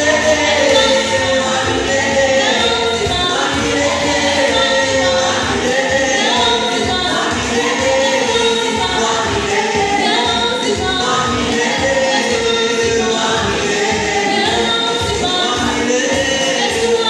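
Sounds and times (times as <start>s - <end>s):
choir singing gospel: 0.0s - 17.0s
music with low beat: 0.0s - 17.0s.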